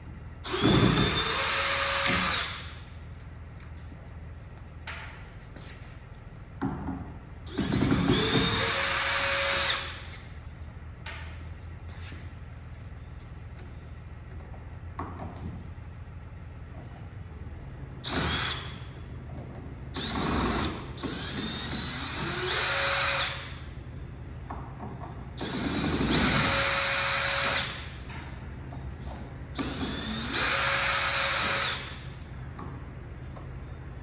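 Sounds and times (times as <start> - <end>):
power drill whining: 0.4 - 2.8, 7.5 - 10.3, 18.0 - 18.9, 20.0 - 23.7, 25.4 - 28.0, 29.6 - 32.2.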